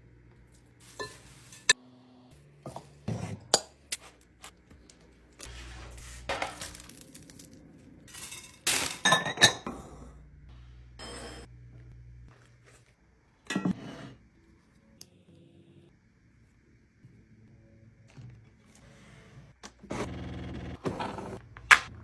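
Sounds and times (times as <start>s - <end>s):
glass jars clinking: 8.1s - 9.8s.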